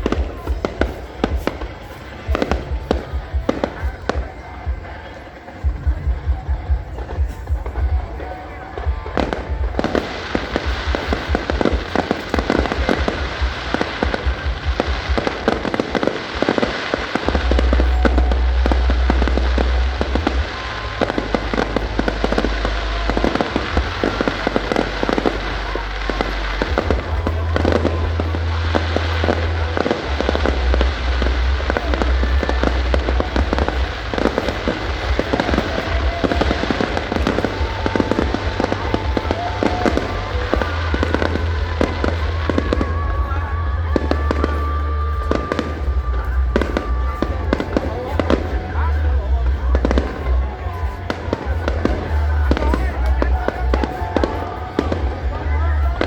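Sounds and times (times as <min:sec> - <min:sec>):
fireworks bangs and crackles: 0:00.0 - 0:56.0
heavy low rumbling: 0:00.0 - 0:56.0.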